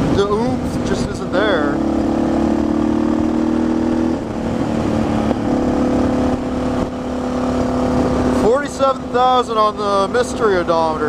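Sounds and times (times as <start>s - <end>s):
wind rush: 0.0s - 8.5s
motorcycle engine running: 0.0s - 11.0s.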